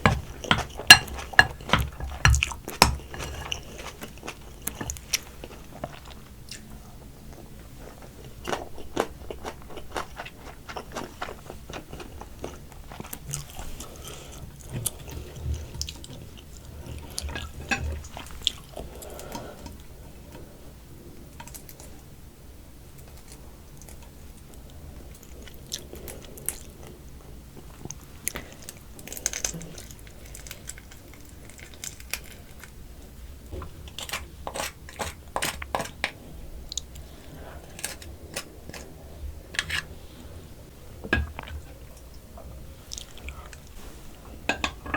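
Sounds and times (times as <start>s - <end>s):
crunching through crab shell: 0.0s - 5.9s, 28.3s - 32.9s, 37.6s - 39.0s
close-miked chewing: 0.0s - 19.8s, 41.4s - 43.8s.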